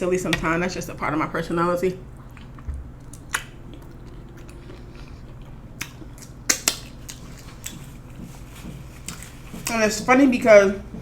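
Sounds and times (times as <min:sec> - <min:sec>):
mouth chewing food: 0:02.0 - 0:09.8.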